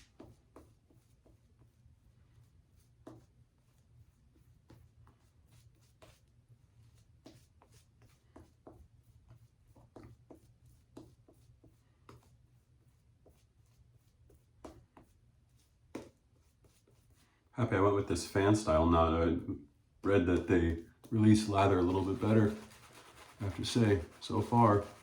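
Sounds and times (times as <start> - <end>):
razor strokes on lathered skin: 21.2 - 25.0.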